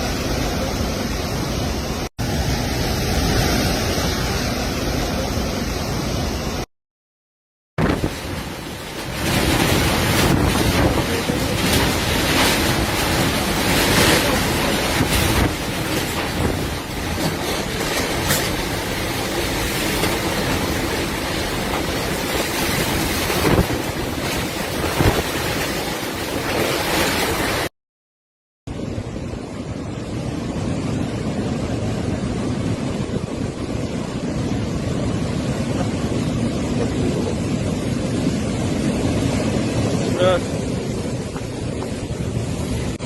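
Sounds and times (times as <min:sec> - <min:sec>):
strong wind rushing: 0:07.8 - 0:27.7, 0:28.7 - 0:43.0.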